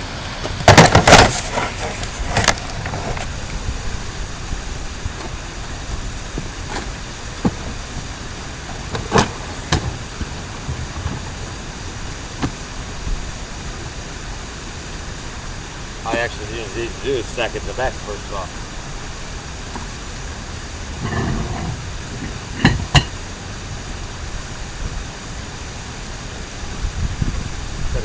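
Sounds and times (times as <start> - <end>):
outdoor background noise: 0.0 - 28.0
plastic cases knocking: 0.4 - 3.3, 5.2 - 13.0, 21.0 - 23.2.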